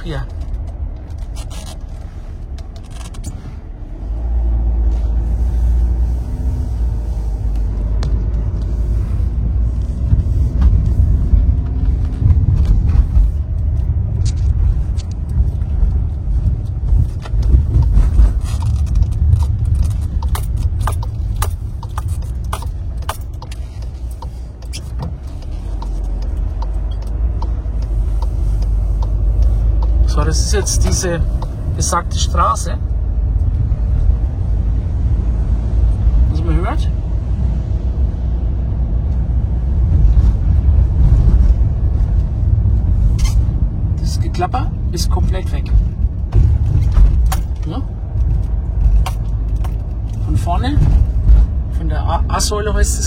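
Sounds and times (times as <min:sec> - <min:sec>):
knocks and clicks over bumps: 0:00.0 - 0:03.3, 0:09.4 - 0:32.0, 0:45.0 - 0:51.8
tyre and road rumble: 0:00.0 - 0:53.0.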